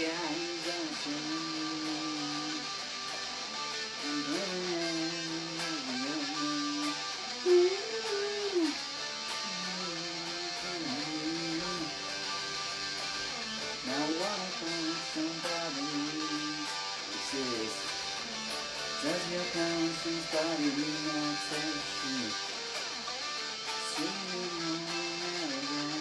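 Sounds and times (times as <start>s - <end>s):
rock guitar lead over chords: 0.0s - 26.0s.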